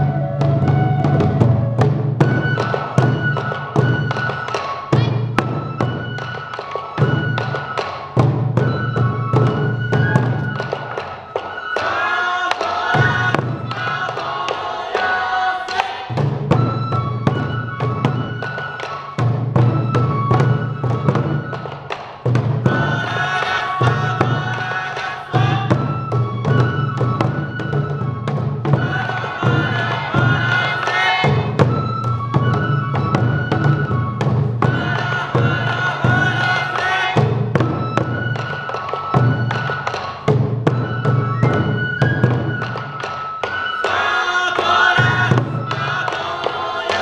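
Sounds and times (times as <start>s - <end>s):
bamboo flute melody: 0.0s - 47.0s
taiko drums beating: 0.0s - 47.0s
voices chanting: 11.4s - 16.7s, 22.7s - 26.0s, 28.7s - 37.5s, 43.7s - 47.0s.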